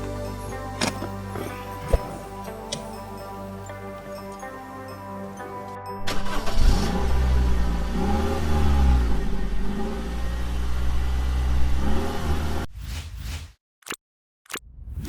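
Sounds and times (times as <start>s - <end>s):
car engine accelerating: 6.0s - 12.7s
road rumble: 6.0s - 12.7s.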